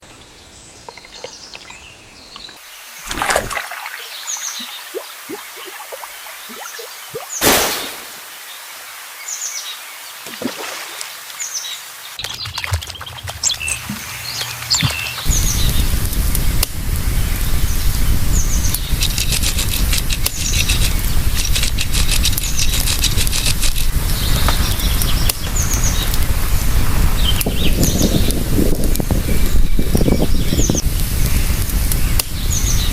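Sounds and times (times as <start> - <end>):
small birds chirping: 0.0 - 32.9
loud hit: 7.4 - 8.2
steady crackling noise: 12.1 - 32.9.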